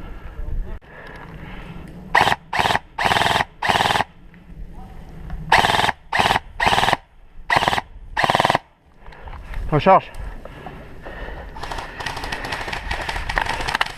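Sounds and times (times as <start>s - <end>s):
airsoft gun firing bursts: 2.2s - 4.1s, 5.5s - 8.7s, 11.6s - 13.9s.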